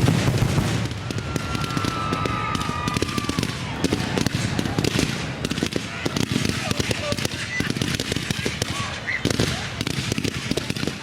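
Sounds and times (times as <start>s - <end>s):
fireworks bursting and crackling: 0.0s - 11.0s
firework high whistle: 0.7s - 3.8s.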